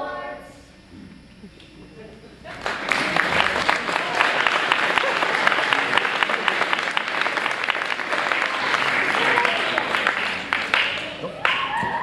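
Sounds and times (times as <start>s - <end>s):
voices: 0.0s - 12.0s
audience applauding: 2.5s - 12.0s.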